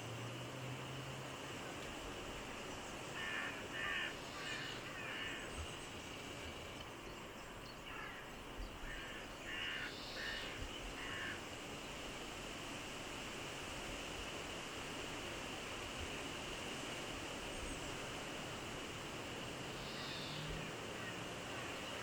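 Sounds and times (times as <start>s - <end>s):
background hiss: 0.0s - 22.0s
bird harsh calls: 3.2s - 5.5s, 7.9s - 11.4s, 19.8s - 21.2s.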